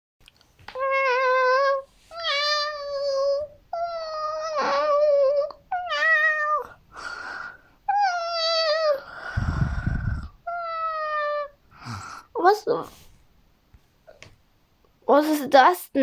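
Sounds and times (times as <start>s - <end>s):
cat meowing: 0.7s - 6.8s, 7.9s - 12.0s.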